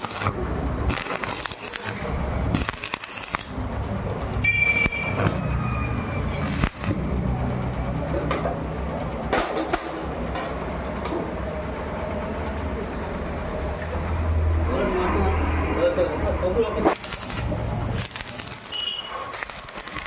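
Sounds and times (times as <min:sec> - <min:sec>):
welding arc crackling: 0:00.0 - 0:07.4, 0:16.8 - 0:20.0
welding machine hum: 0:00.0 - 0:07.8, 0:16.8 - 0:20.0.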